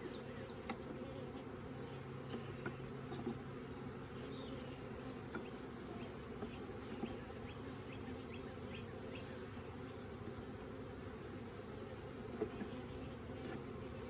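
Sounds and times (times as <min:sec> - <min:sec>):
bees buzzing: 0:00.0 - 0:14.0.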